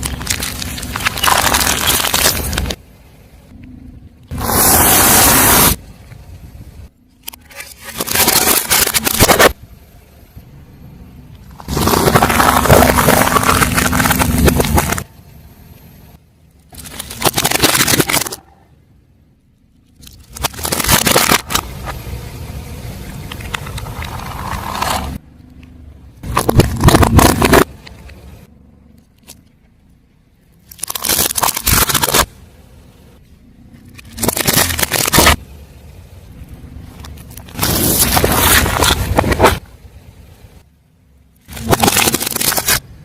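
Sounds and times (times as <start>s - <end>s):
tyre crushing crunchy objects: 0.0s - 2.8s, 11.5s - 15.1s, 16.7s - 18.6s, 20.0s - 22.0s, 23.3s - 25.2s, 26.2s - 28.1s, 30.6s - 32.4s, 33.8s - 35.5s, 36.9s - 39.7s, 41.4s - 42.9s.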